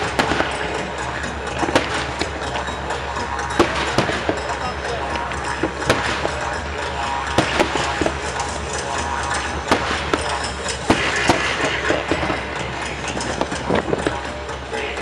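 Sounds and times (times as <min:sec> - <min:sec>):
fireworks bangs: 0:00.0 - 0:14.3
steady background noise: 0:00.0 - 0:15.0.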